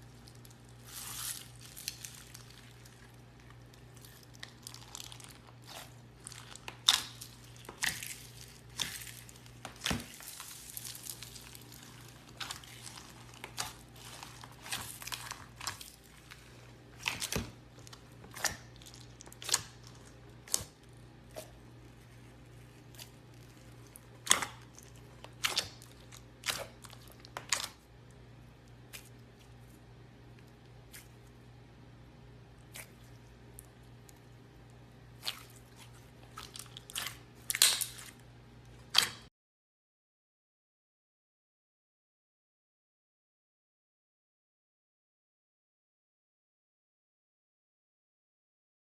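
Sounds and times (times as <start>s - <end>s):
hands squishing slime: 0.0s - 27.8s, 32.6s - 39.3s.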